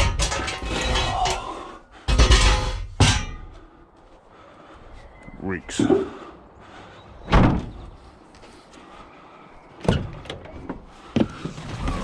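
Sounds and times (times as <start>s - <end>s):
heavy knocks and bangs: 2.1s - 3.6s.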